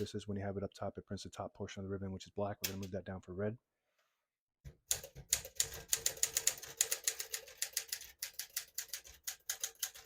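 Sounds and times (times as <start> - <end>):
typewriter keys clacking: 4.9 - 10.0.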